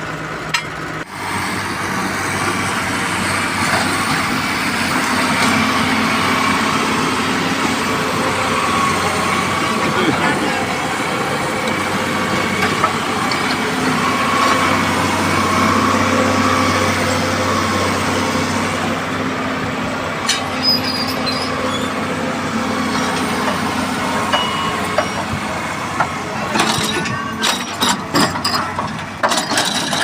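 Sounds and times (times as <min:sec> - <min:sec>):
heavy machinery engine hum: 0:00.0 - 0:30.0.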